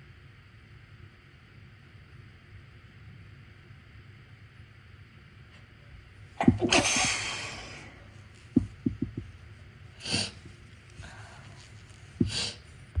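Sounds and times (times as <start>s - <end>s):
person sneezing: 6.4s - 8.1s, 10.0s - 11.4s, 12.2s - 12.6s
short sniffs: 6.5s - 8.1s, 10.0s - 12.7s.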